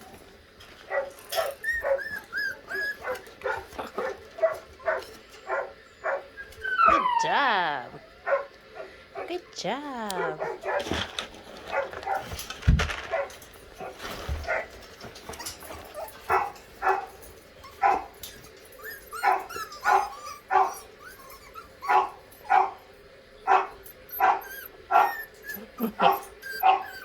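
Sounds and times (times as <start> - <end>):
dog barking: 0.9 - 2.0, 3.0 - 6.3, 8.2 - 9.3, 10.2 - 11.0, 11.7 - 12.3, 13.1 - 13.9, 16.3 - 17.1, 17.8 - 18.1, 19.2 - 20.8, 21.9 - 22.8, 23.5 - 25.1, 25.8 - 26.9.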